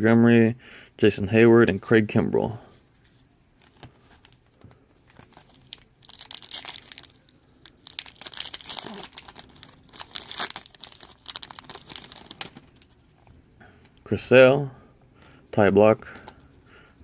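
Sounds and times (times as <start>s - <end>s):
foil wrapper tearing and crinkling: 5.1s - 12.8s.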